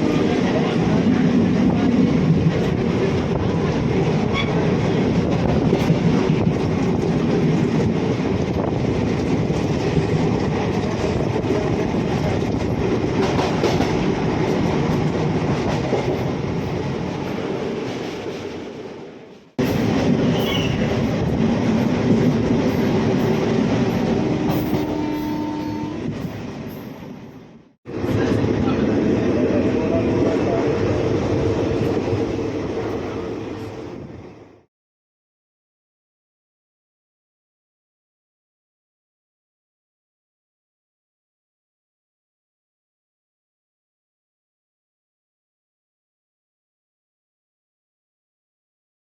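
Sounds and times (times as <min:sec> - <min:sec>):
train rumbling on track: 0:00.0 - 0:34.7.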